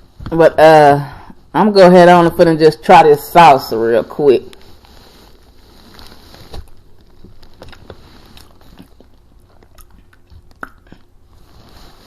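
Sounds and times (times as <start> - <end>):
chewing with small clicks: 7.6 - 11.1.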